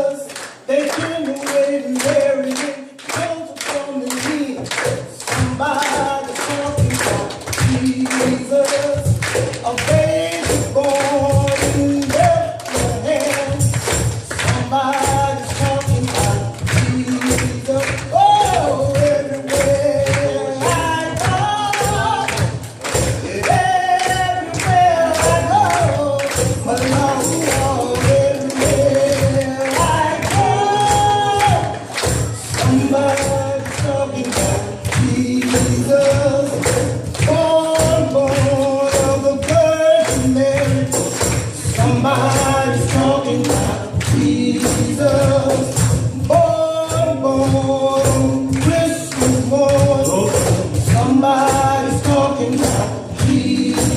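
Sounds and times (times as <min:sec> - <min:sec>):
band with steady beat: 0:00.0 - 0:53.9
voices singing gospel: 0:00.0 - 0:53.9
tambourine: 0:31.7 - 0:53.9.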